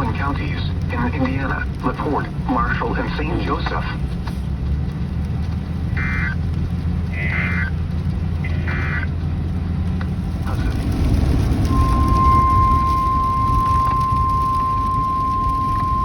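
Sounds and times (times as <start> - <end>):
rain: 0.0 - 16.0
vehicle and road noise: 0.0 - 16.0
warbling radio data burst: 6.0 - 6.4
steady warning alarm tone: 11.7 - 16.0.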